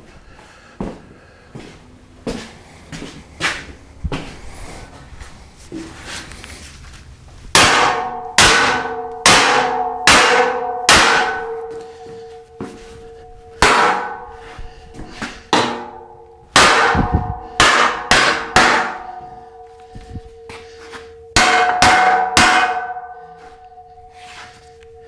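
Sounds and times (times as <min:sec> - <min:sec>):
hammer striking steel: 0:07.6 - 0:25.0.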